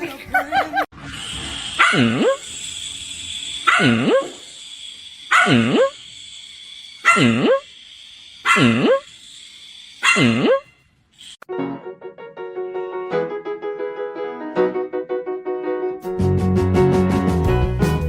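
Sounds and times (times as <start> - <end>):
dog barking: 1.8 - 2.4, 3.6 - 4.4, 5.3 - 6.0, 7.0 - 7.6, 8.4 - 9.0, 10.0 - 10.6.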